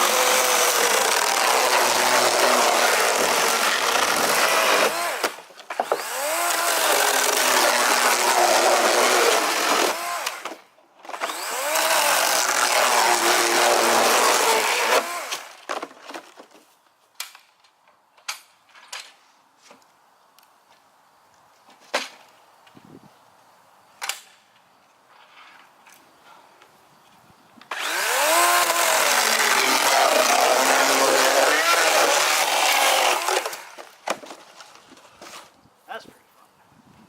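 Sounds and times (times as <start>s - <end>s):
chainsaw cutting through a door: 0.0s - 15.5s, 27.7s - 34.2s.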